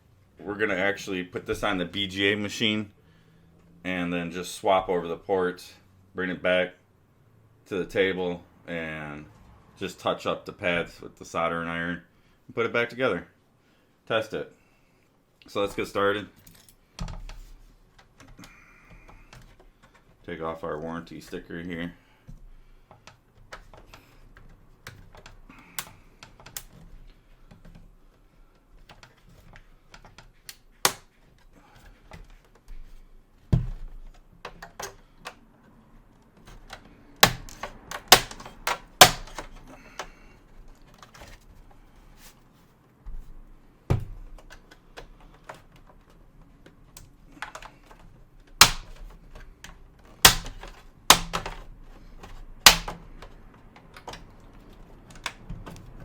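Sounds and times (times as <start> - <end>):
tools clicking on plastic case: 22.3 - 41.7, 43.9 - 56.0.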